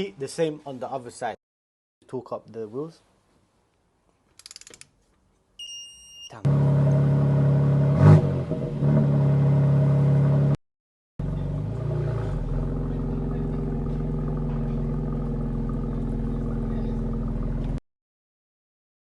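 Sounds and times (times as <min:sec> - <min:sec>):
car engine running: 0:06.5 - 0:10.6, 0:11.2 - 0:17.8.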